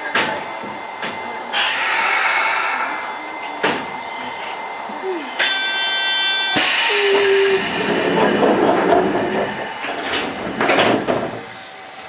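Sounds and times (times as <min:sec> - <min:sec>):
train wheel and rail noise: 0:00.0 - 0:12.0
air hissing: 0:01.6 - 0:03.1, 0:06.0 - 0:11.8
sharp squeals or clanks: 0:05.4 - 0:11.8.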